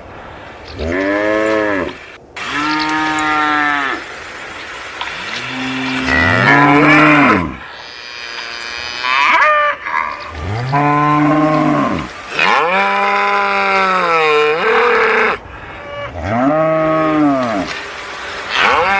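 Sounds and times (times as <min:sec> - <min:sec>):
cattle mooing: 0:05.2 - 0:17.8.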